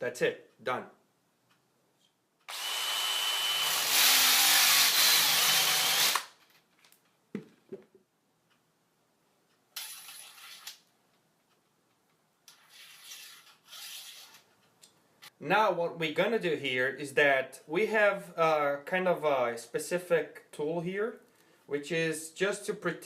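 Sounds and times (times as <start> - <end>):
power drill whining: 2.5 - 6.3.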